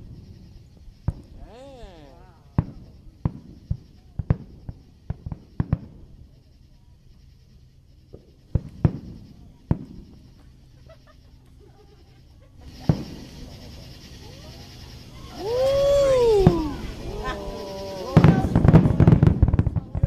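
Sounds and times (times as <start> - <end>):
fireworks bangs echoing: 0.0 - 6.2, 8.1 - 10.6, 12.6 - 13.7, 15.4 - 20.0.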